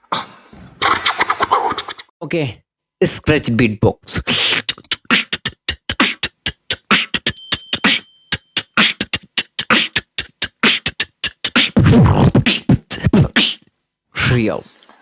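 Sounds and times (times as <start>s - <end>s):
beatbox record scratching imitation: 0.6s - 2.1s, 3.2s - 13.7s.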